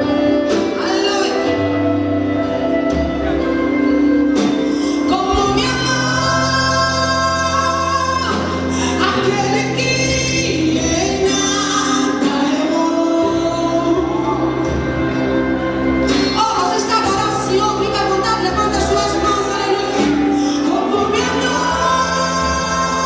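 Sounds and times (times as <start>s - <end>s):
gospel band playing: 0.0s - 23.0s
woman singing lead: 0.0s - 23.0s
backing singers: 4.8s - 23.0s.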